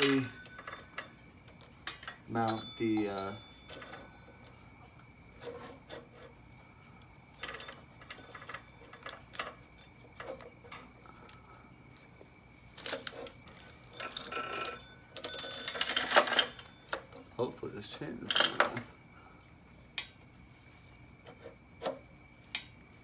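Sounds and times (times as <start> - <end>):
metal chain clinking and rattling: 0.0 - 6.3, 7.3 - 11.1, 12.8 - 17.2.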